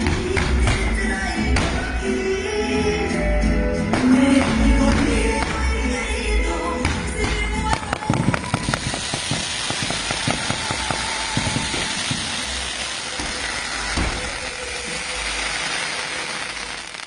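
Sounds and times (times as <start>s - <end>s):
fireworks popping and banging: 0.0s - 2.1s, 6.8s - 17.0s
hissing crackle: 8.4s - 17.0s.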